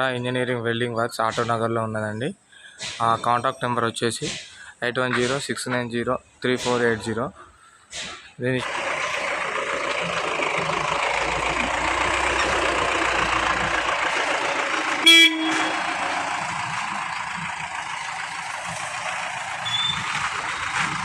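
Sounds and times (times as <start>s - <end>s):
vehicle horn tooting: 15.0s - 15.9s.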